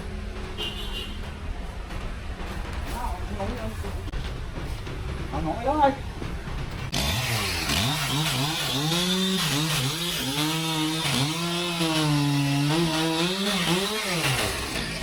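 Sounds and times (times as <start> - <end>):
chainsaw running: 6.9 - 15.0.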